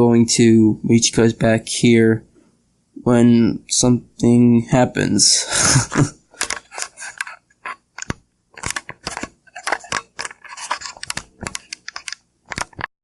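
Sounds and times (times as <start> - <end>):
camera handling noise: 8.0 - 12.9.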